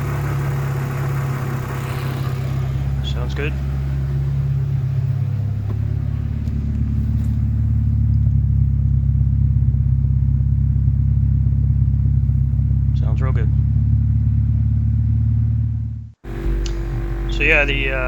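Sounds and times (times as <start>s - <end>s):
car engine idling: 0.0s - 18.0s.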